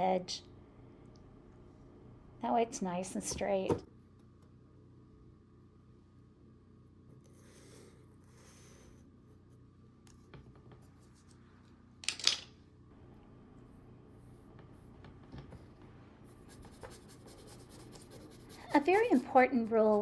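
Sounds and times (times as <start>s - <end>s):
paintbrush scratching on canvas: 16.4s - 20.0s.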